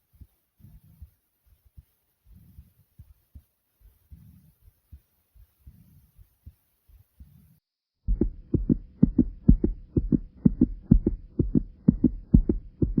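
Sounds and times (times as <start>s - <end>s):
fast heartbeat: 8.1s - 13.0s.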